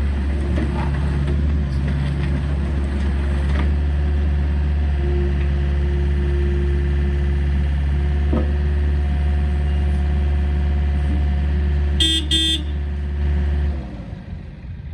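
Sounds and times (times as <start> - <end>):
excavator diesel engine running: 0.0 - 14.9
horn toots: 12.0 - 12.8.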